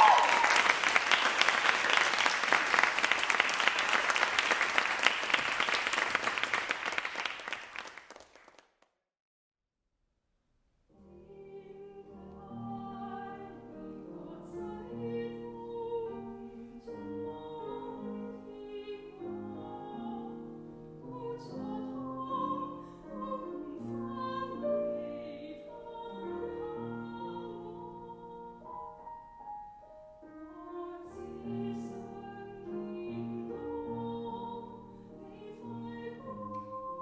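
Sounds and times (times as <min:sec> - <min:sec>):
piano accompaniment: 0:10.9 - 0:37.0
classical-style singing: 0:11.0 - 0:29.4, 0:30.0 - 0:37.0.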